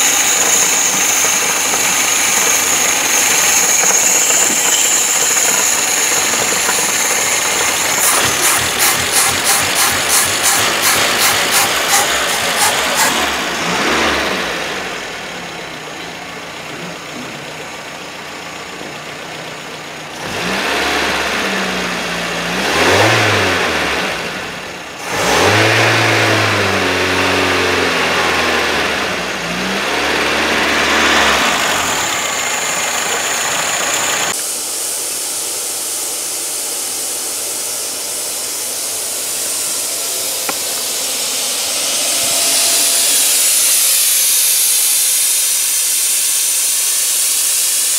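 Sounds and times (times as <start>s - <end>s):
car engine revving: 0.0s - 15.7s, 20.1s - 34.3s, 39.3s - 46.1s.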